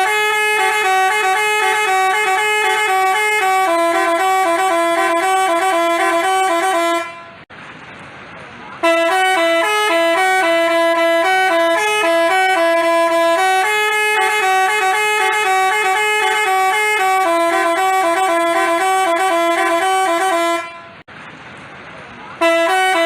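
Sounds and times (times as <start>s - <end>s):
musical bus horn tune: 0.0s - 7.5s, 8.8s - 21.1s, 22.4s - 23.0s.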